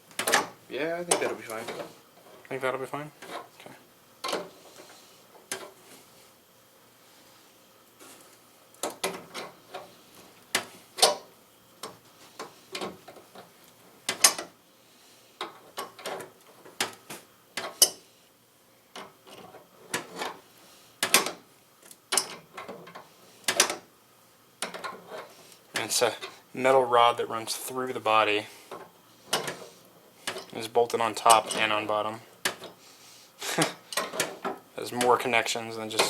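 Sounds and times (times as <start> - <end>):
hand tools clicking and knocking: 10.5 - 13.5, 14.1 - 14.5, 17.6 - 18.0, 21.0 - 23.8, 24.6 - 26.3, 28.7 - 31.8, 32.4 - 32.8, 33.6 - 35.3.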